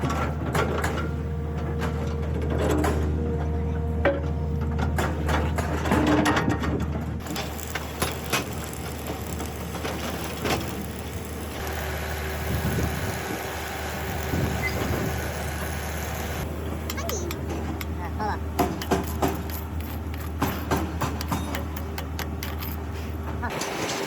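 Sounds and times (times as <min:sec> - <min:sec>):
low mechanical hum: 0:00.0 - 0:24.0
sharp knocks and clicks: 0:18.6 - 0:22.8.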